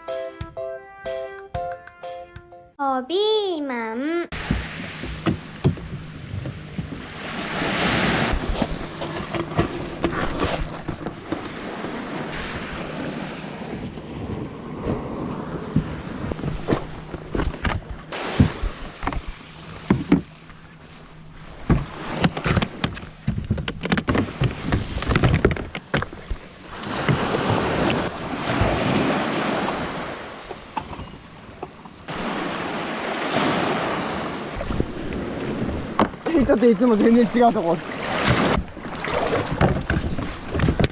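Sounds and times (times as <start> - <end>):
sea water washing and splashing: 4.3 - 40.9
knocks and clatter: 21.6 - 26.4.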